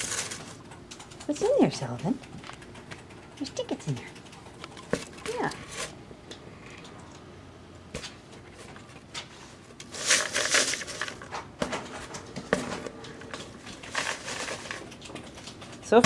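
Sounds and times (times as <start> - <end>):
paper tickets rustling: 9.8 - 11.4, 13.1 - 16.0.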